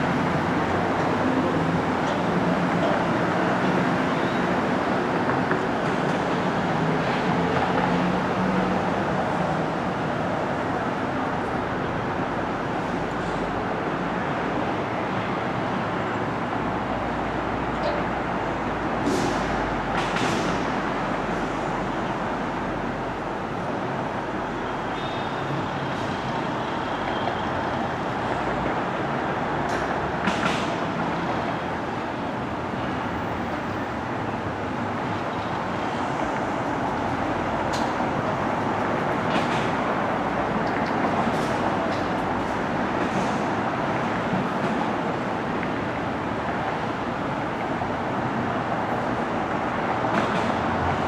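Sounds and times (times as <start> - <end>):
brief hisses: 19.1 - 19.6.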